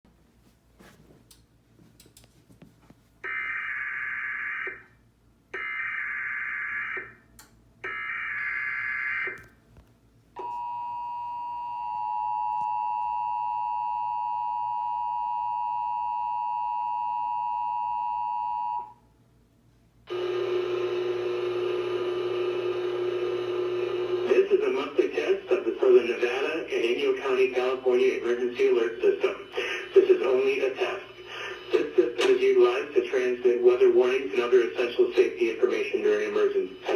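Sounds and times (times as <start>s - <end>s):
steady multi-tone buzzing: 20.1s - 36.9s.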